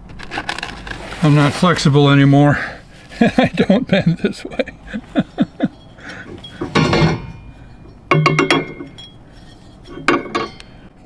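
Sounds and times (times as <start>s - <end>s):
metal hardware clinking: 4.5s - 11.0s.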